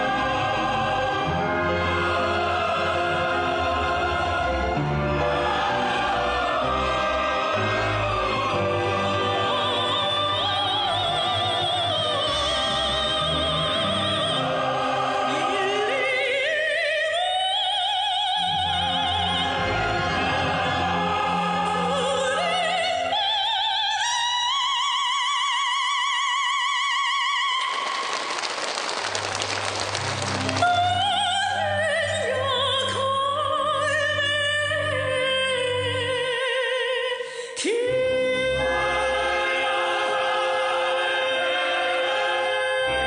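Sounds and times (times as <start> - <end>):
person singing with vibrato: 30.5 - 43.0.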